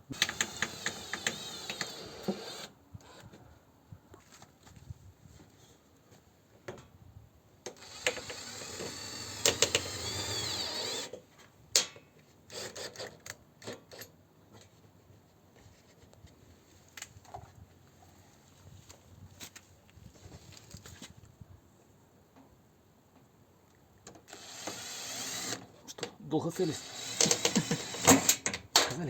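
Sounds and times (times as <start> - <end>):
cordless drill running: 0.1 - 2.7, 7.7 - 11.2, 24.3 - 25.7, 26.7 - 28.4
drill clutch clicks: 0.1 - 2.7, 7.7 - 11.2, 26.8 - 28.5.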